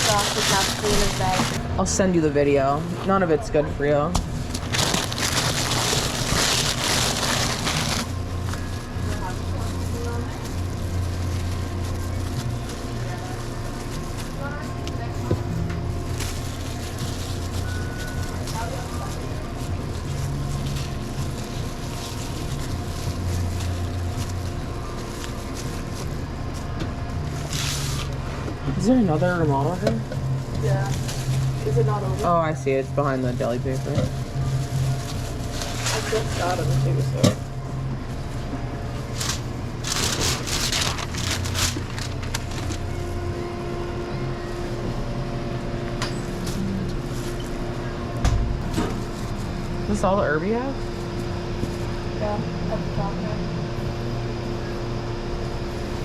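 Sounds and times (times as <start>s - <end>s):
low hum of fans and refrigeration: 0.0s - 56.0s
rustling: 4.5s - 14.7s.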